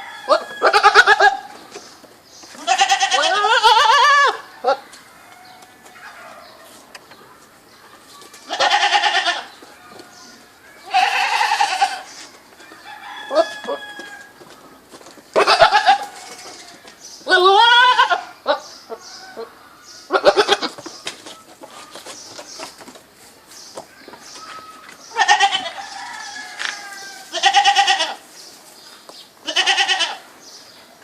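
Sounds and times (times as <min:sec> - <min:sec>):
goats bleating: 0:02.6 - 0:04.8, 0:08.5 - 0:09.5, 0:10.8 - 0:12.1, 0:15.4 - 0:18.6, 0:24.6 - 0:25.8, 0:26.6 - 0:28.2, 0:29.4 - 0:30.2.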